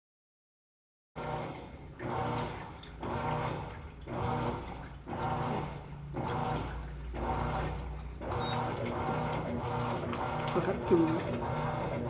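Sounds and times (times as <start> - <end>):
washing machine agitating: 1.2 - 12.0
water sloshing: 2.4 - 12.0.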